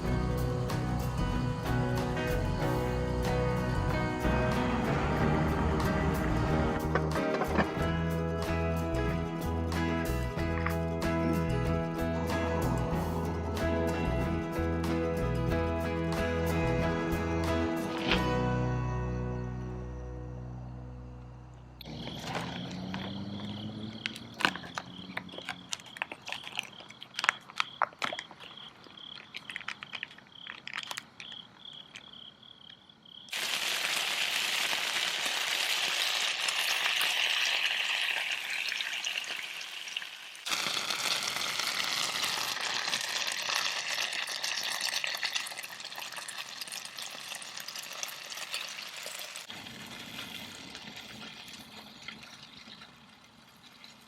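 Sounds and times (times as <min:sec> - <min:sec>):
food sizzling in a pan: 0:33.3 - 0:52.0.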